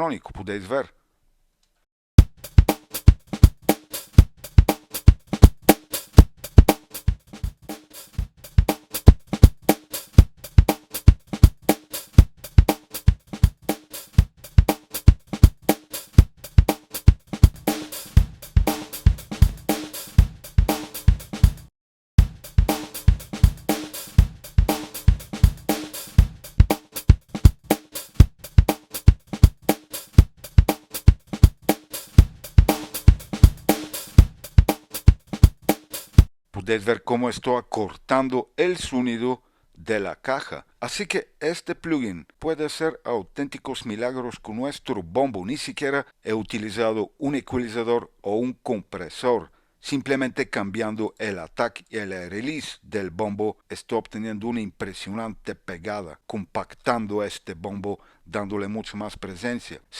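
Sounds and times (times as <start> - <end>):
funk drum loop: 2.2 - 36.3.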